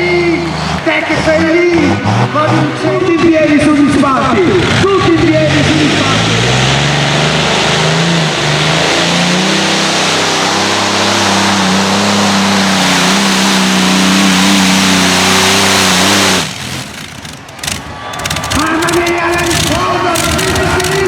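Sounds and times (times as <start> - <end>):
pulling machine engine at full power: 0.0 - 21.0.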